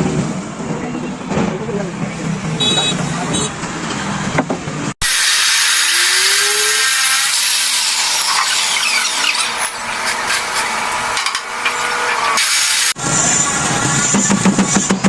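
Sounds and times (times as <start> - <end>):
angle grinder grinding metal: 5.0 - 13.0.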